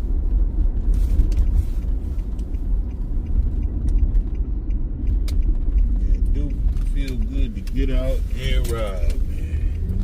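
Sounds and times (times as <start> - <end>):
car driving heard from inside: 0.0 - 10.0.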